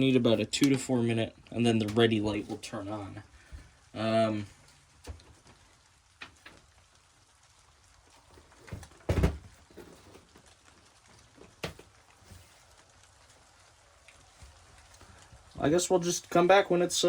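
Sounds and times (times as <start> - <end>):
heavy thump: 9.1 - 9.5.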